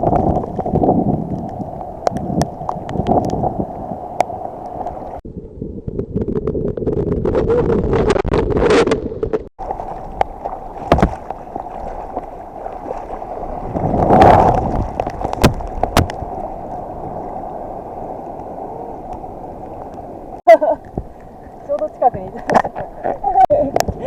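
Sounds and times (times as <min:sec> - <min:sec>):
surf water rushing and sloshing: 0:00.0 - 0:05.2, 0:09.6 - 0:24.0
sharp knocks: 0:10.8 - 0:11.4.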